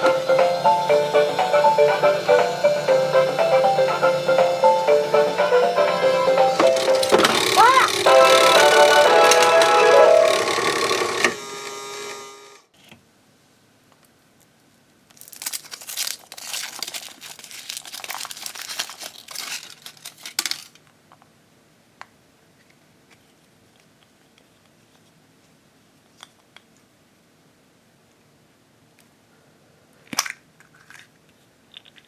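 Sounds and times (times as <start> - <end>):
short melody: 0.0 - 11.2
wrapper crinkling and tearing: 15.1 - 20.9.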